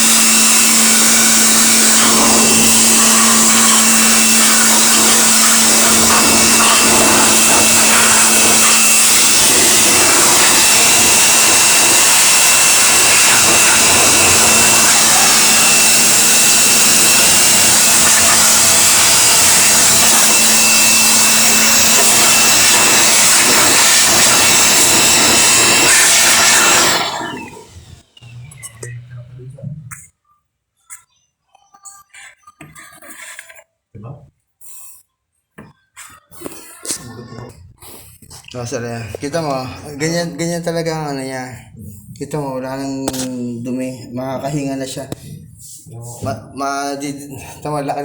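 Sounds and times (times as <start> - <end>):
electric cleaning tool whining: 0.0 - 28.2.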